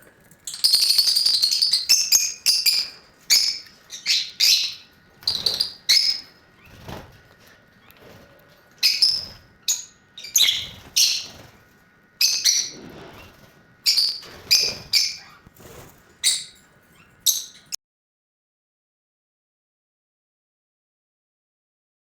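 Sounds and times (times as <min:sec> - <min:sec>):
lovebirds chirping shrilly: 0:00.5 - 0:06.9, 0:08.8 - 0:11.6, 0:12.2 - 0:15.5, 0:16.2 - 0:17.8.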